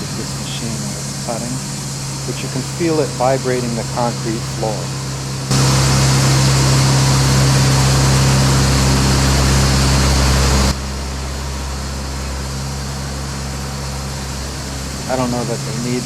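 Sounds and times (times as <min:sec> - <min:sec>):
band saw cutting log: 0:00.0 - 0:10.8, 0:14.3 - 0:16.0
sawmill low hum: 0:00.0 - 0:16.0.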